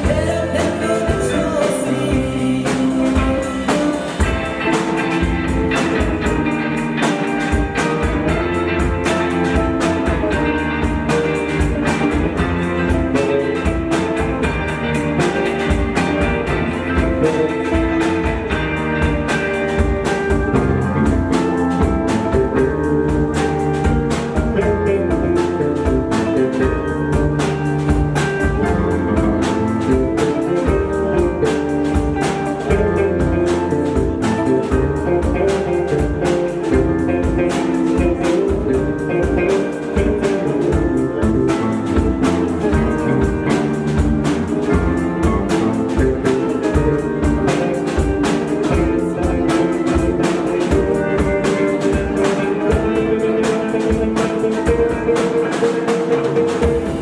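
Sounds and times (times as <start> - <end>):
drum kit beat: 0.0 - 57.0
guitar chords and notes: 0.0 - 57.0.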